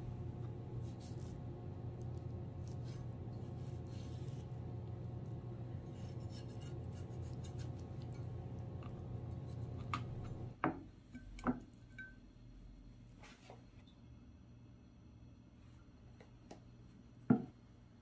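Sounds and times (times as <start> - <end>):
microwave oven humming: 0.0 - 10.6.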